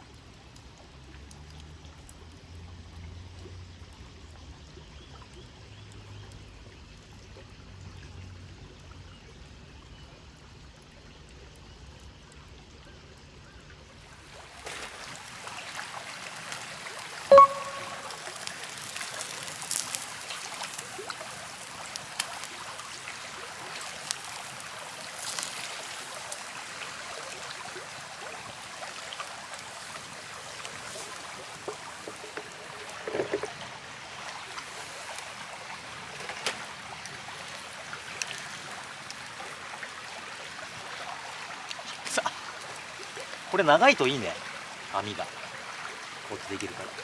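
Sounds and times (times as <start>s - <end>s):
campfire crackling: 10.8s - 47.0s.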